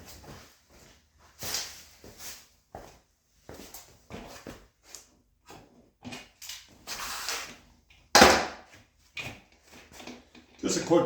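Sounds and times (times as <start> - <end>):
handling rustles scrapes and clunks: 8.7 - 10.8.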